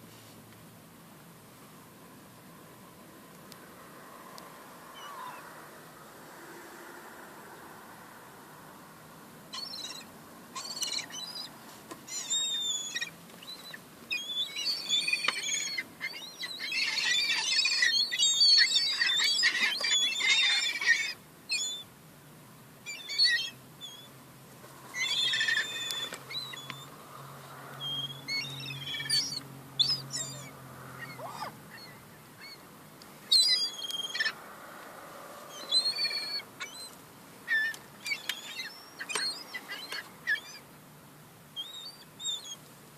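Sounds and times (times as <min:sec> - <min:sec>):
young gulls calling and squabbling: 0:09.6 - 0:11.5, 0:12.1 - 0:21.8, 0:22.9 - 0:24.1, 0:24.9 - 0:27.0, 0:27.8 - 0:32.6, 0:33.3 - 0:34.4, 0:35.5 - 0:40.6, 0:41.6 - 0:42.6.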